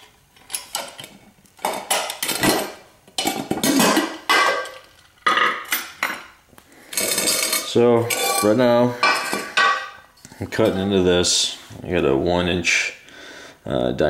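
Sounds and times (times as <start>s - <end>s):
metal pot and lid clanking: 0.0s - 6.3s, 7.0s - 10.0s.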